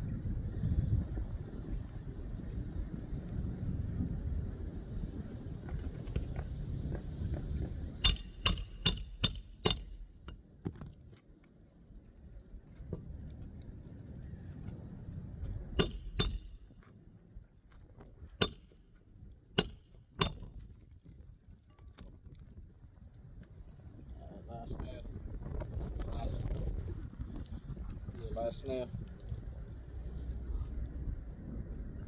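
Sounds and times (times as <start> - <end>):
hammer striking roofing nails: 8.0 - 10.3, 15.8 - 16.7, 19.6 - 20.6.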